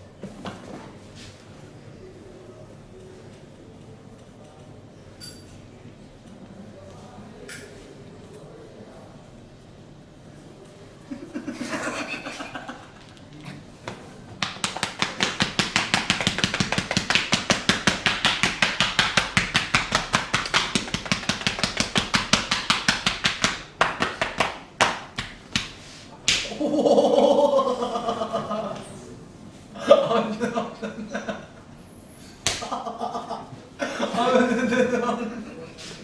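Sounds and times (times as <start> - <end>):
hands slapping skin: 14.4 - 26.5, 32.4 - 32.7.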